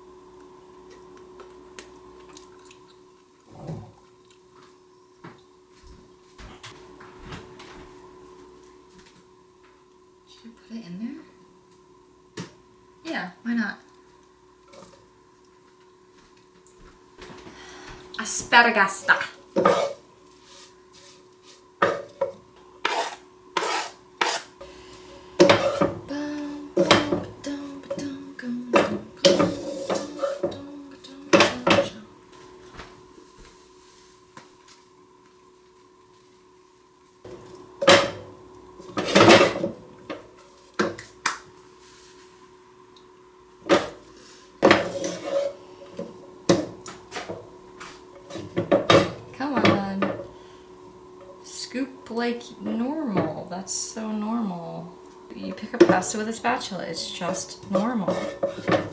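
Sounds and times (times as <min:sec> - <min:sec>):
utensil scraping food in a pan: 0:19.1 - 0:22.2, 0:22.8 - 0:26.0, 0:29.2 - 0:30.6, 0:44.3 - 0:49.2, 0:55.8 - 0:58.9.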